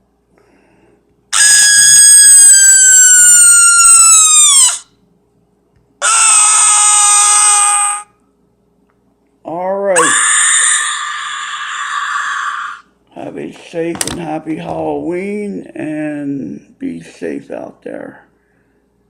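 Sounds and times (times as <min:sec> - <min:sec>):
shrill screams: 0:01.3 - 0:05.0, 0:06.0 - 0:08.2, 0:09.9 - 0:12.9.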